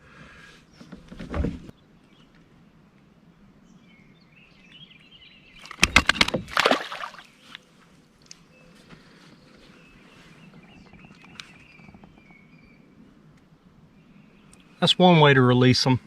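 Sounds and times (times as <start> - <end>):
water splashing: 5.6 - 7.4.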